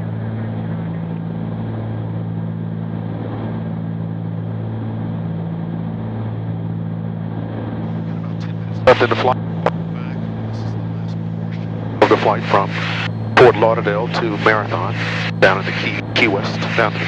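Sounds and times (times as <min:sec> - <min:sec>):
twin piston engines droning: 0:00.0 - 0:17.0
intercom hiss: 0:08.1 - 0:17.0.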